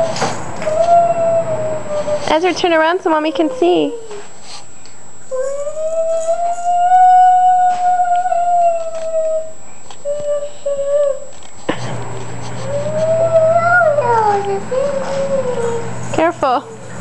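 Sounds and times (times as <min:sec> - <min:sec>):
low steady hum: 0:00.0 - 0:17.0
child singing high notes: 0:12.7 - 0:15.8.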